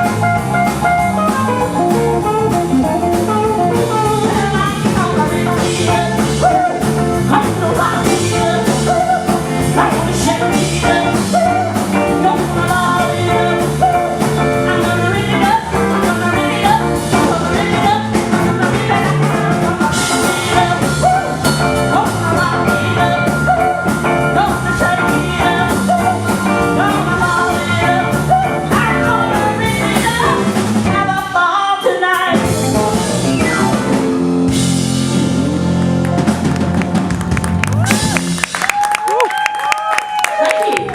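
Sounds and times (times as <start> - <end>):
live rock band playing blues: 0.0 - 38.8.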